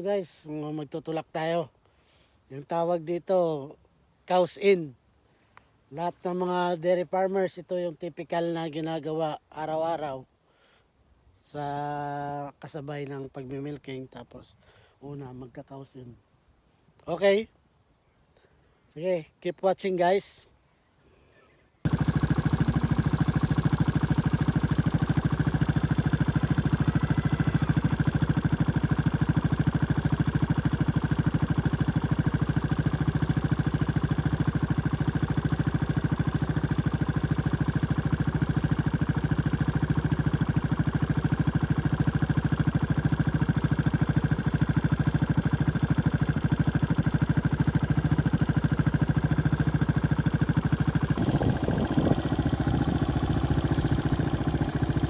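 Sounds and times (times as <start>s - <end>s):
farm vehicle engine running: 21.9s - 55.0s.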